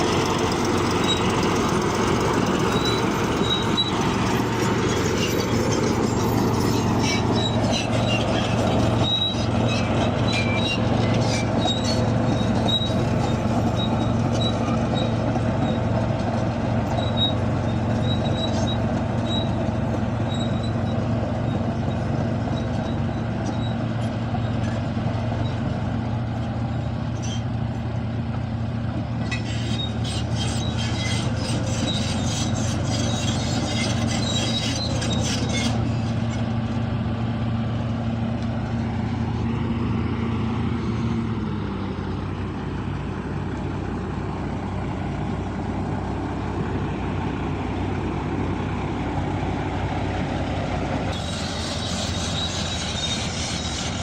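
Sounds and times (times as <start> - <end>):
steel tracks squeaking and clinking: 0.0 - 25.7, 26.5 - 27.6, 29.1 - 36.9, 51.1 - 54.0
bulldozer diesel engine running: 0.0 - 54.0.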